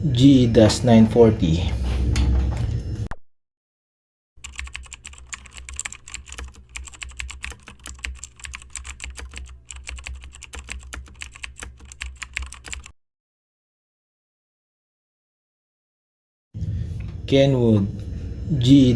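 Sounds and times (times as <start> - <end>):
steady low hum: 0.0 - 3.1, 16.6 - 18.9
keys typing clicks: 4.4 - 12.9.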